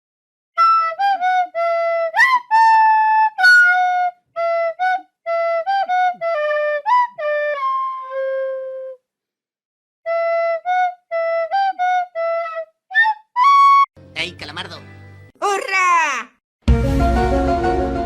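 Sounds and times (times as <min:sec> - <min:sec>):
flute melody: 0:00.6 - 0:09.0, 0:10.1 - 0:13.9.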